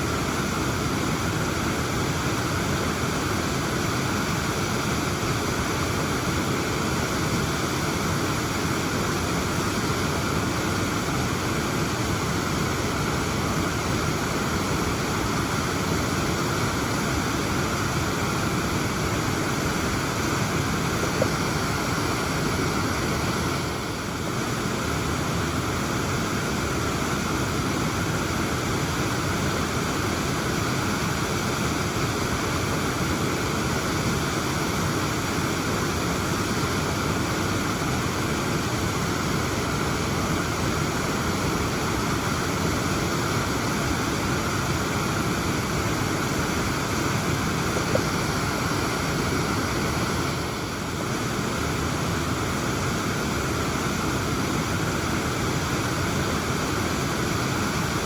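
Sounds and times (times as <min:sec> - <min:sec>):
waterfall pouring: 0:00.0 - 0:58.0.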